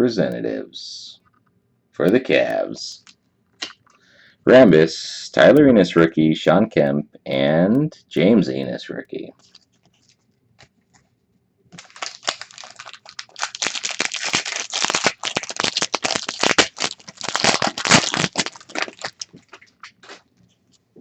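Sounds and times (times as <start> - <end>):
wrapper crinkling and tearing: 11.7 - 20.3.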